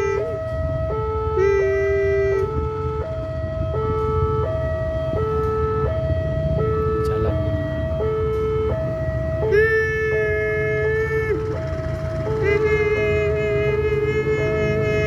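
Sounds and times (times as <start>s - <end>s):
two-tone crossing alarm: 0.0s - 15.0s
low rumble: 2.3s - 15.0s
horn note: 9.5s - 15.0s.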